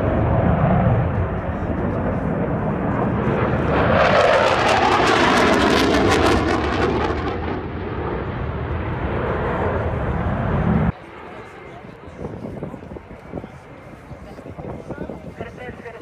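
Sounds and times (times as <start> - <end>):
military jet roaring past: 0.0 - 11.4.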